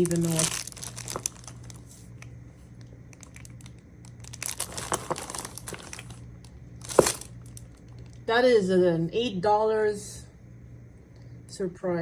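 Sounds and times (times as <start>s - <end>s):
packaging crinkling: 0.0s - 8.3s.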